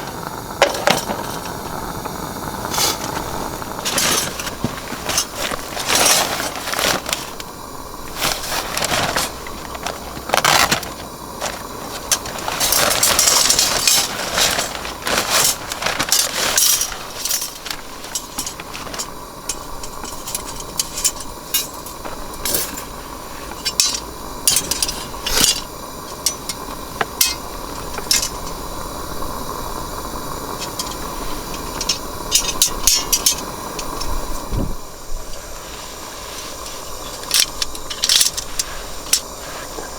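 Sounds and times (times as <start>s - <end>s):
continuous hiss: 0.0s - 39.9s
metal and glass objects clinking: 12.0s - 22.9s, 23.6s - 28.5s.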